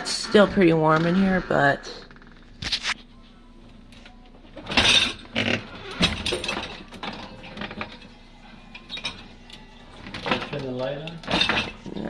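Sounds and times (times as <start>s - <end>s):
dishes clattering and clinking: 4.5s - 12.0s.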